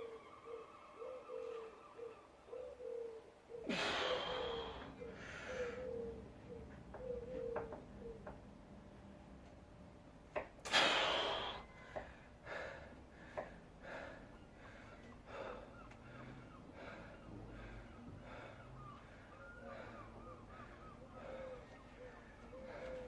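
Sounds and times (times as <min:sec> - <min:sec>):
person breathing hard: 0:03.7 - 0:06.0, 0:10.7 - 0:23.0.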